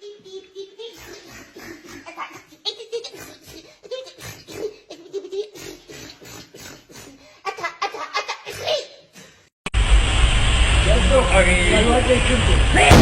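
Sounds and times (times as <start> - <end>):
people laughing: 0.0 - 8.5.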